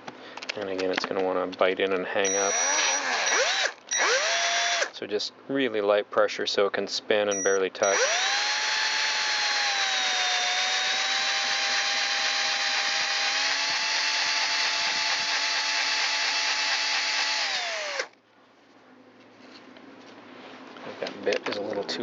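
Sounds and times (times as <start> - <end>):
electric drill whining: 2.3 - 4.9, 7.4 - 18.2.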